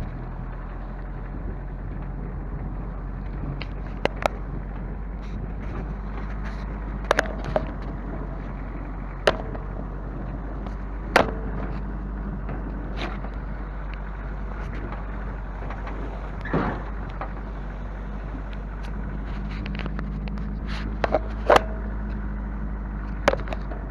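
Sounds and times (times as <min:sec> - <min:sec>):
vehicle engine rumbling: 0:00.0 - 0:23.9
sharp knocks and clatters: 0:05.2 - 0:14.0, 0:14.6 - 0:17.6, 0:18.6 - 0:22.3, 0:23.0 - 0:23.9.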